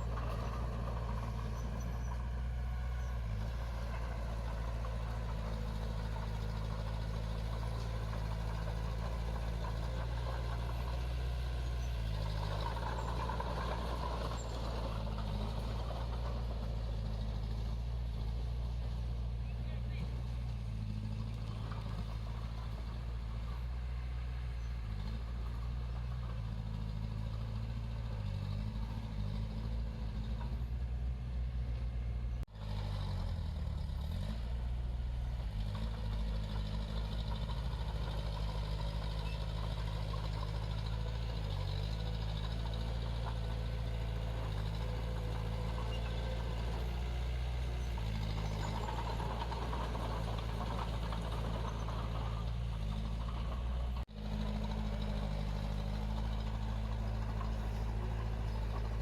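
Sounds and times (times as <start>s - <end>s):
diesel engine running: 0.0s - 59.0s.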